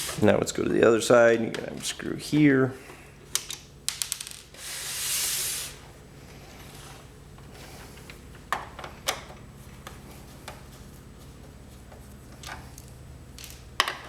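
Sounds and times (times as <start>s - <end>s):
screw scraping hiss: 4.6s - 5.9s.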